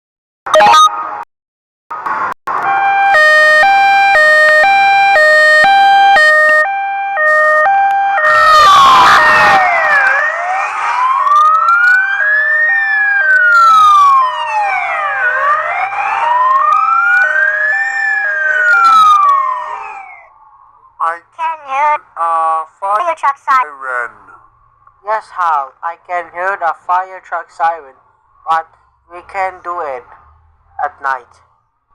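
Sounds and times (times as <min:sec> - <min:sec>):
two-tone hi-lo siren: 0:00.5 - 0:01.2, 0:02.5 - 0:20.6
wailing siren: 0:02.5 - 0:21.0.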